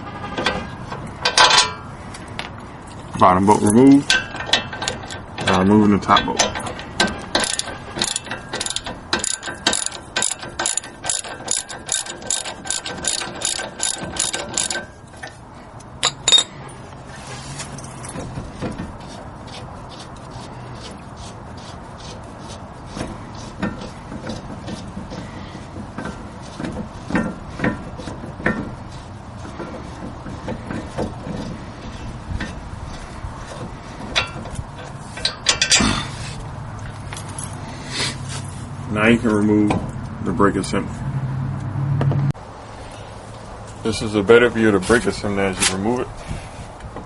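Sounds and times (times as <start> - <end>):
ratchet wrench clicking: 6.5 - 14.9.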